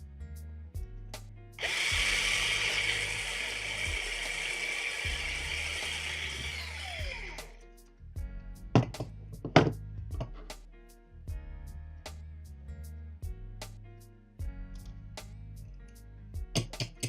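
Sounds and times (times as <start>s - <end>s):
background music: 0.0s - 17.0s
electric drill running: 1.6s - 7.6s.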